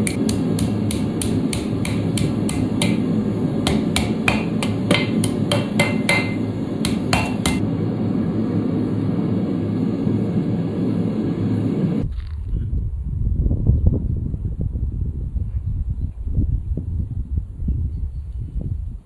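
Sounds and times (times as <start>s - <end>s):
hammer ringing on anvil: 0.0s - 7.6s.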